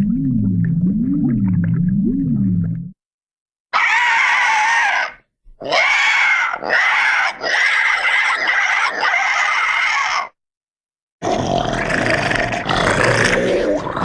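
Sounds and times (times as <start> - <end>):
cartoon monster screeching roar: 3.7 - 10.4.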